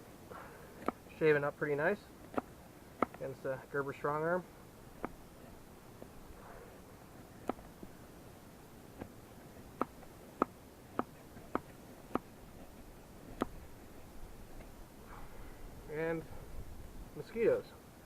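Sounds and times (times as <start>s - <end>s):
knife shaving dry wood: 9.0s - 14.8s.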